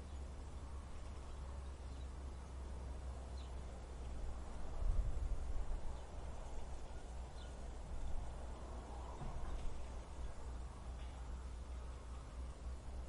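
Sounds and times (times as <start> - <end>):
wind blowing: 3.8 - 12.3.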